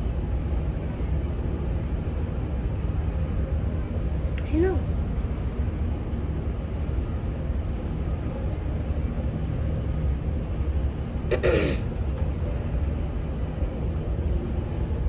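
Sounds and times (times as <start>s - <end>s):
low rumble of ship and wind: 0.0s - 15.0s
person coughing: 11.3s - 11.9s.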